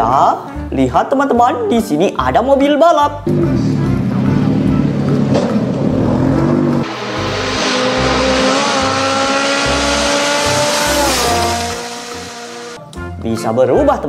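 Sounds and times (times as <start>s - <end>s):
race car engine: 3.3s - 12.8s.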